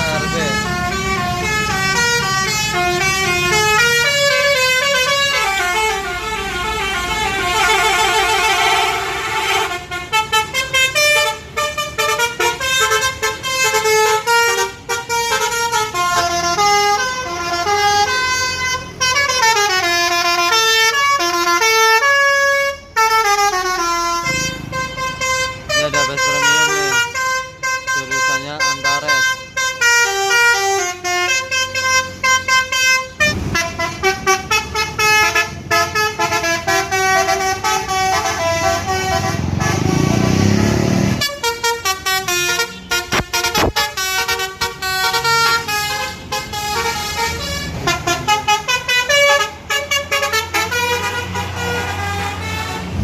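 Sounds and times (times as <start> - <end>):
bus engine running: 0.0 - 27.7, 29.4 - 53.0
bus horns playing melodies: 0.0 - 53.0.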